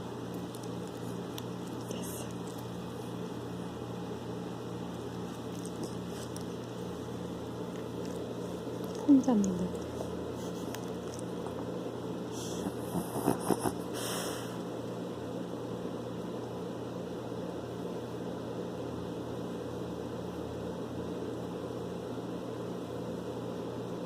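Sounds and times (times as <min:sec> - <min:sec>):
low hum and hiss: 0:00.0 - 0:24.0.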